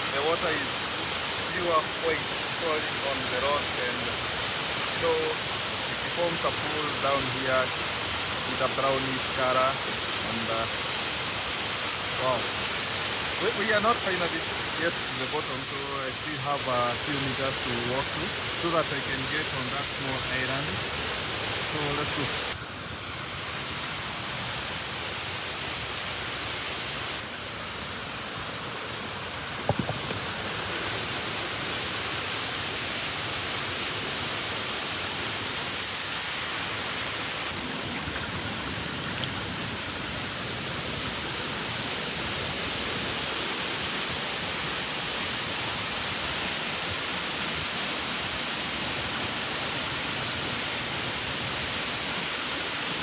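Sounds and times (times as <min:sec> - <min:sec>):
waterfall roaring onto rock: 0:00.0 - 0:53.0
brief knock: 0:29.6 - 0:30.2.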